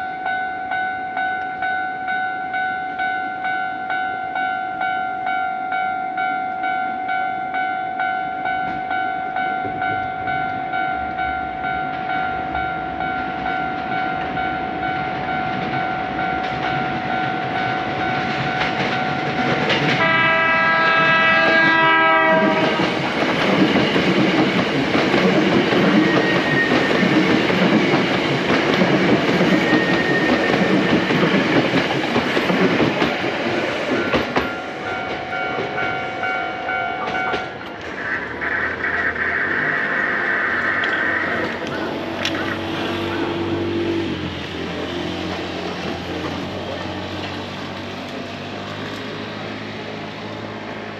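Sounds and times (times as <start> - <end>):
level-crossing warning bell: 0.0 - 37.8
train wheels clickety-clack: 15.0 - 39.7, 40.7 - 49.2
train horn: 19.9 - 23.1.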